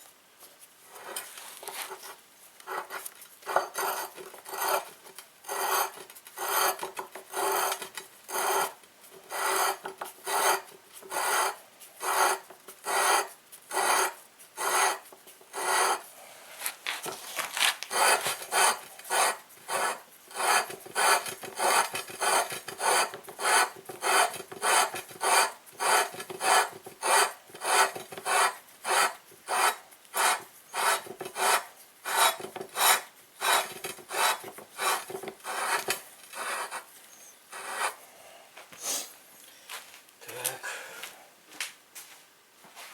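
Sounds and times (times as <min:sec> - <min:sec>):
hand tool rasping strokes: 0:02.7 - 0:04.9, 0:05.5 - 0:36.9, 0:37.5 - 0:38.0.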